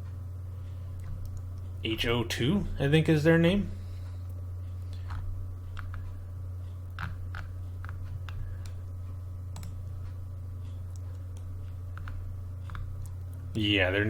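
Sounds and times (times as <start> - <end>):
low electrical hum: 0.0 - 14.0
keyboard and mouse clicks: 4.9 - 6.1, 6.9 - 8.8, 9.5 - 9.9, 10.9 - 13.4.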